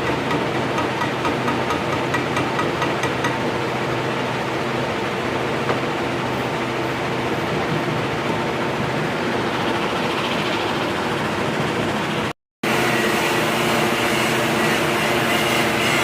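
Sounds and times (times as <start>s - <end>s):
angle grinder grinding steel: 12.7s - 16.0s.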